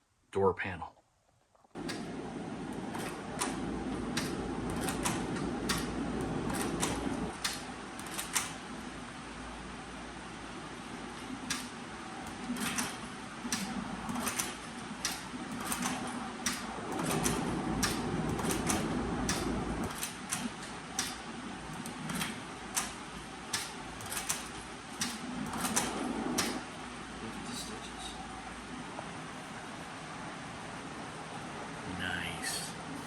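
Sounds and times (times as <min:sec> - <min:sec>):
sewing machine stitching: 0:01.8 - 0:08.6, 0:11.5 - 0:26.7
sewing machine motor humming: 0:01.8 - 0:08.7, 0:12.2 - 0:26.8
sewing machine stitch click: 0:02.8 - 0:08.6, 0:11.5 - 0:11.7, 0:12.3 - 0:21.2, 0:21.8 - 0:26.7.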